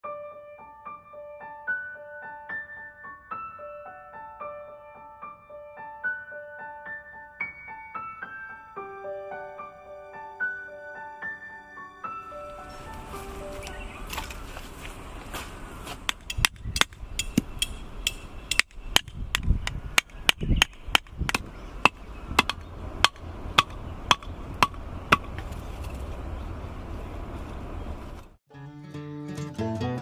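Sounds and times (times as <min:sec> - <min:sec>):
hammer strikes ringing: 0:16.0 - 0:25.4.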